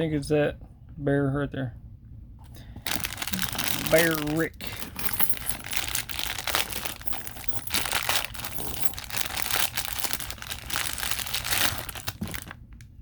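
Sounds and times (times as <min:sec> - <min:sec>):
packaging tearing: 0:02.8 - 0:12.6
packaging crinkling and rustling: 0:02.8 - 0:13.0.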